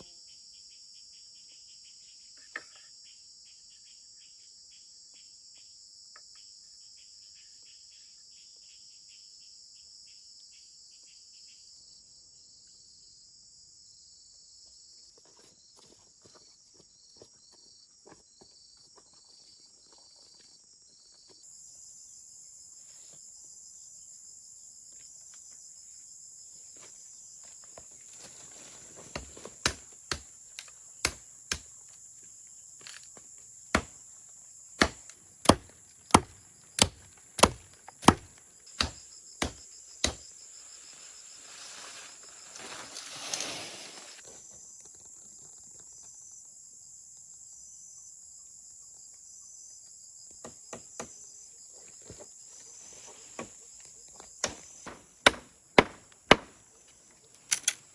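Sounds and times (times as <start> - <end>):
insects droning: 0.0 - 57.9
chopping strikes: 29.2 - 31.7, 33.7 - 34.0, 34.8 - 40.3, 54.4 - 56.6.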